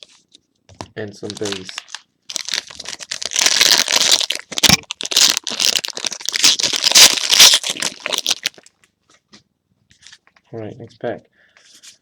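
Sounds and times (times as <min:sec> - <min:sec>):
plastic wrapper crinkling: 0:00.0 - 0:08.8.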